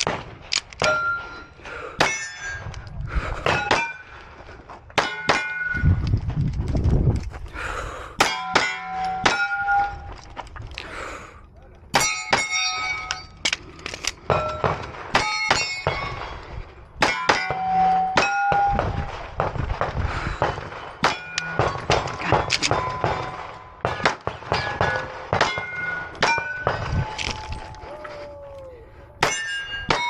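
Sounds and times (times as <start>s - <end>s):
steel plate ringing: 8.2s - 10.1s, 11.9s - 13.4s, 14.3s - 16.2s, 17.0s - 18.8s, 29.2s - 30.0s
pistol shots: 18.2s - 27.4s.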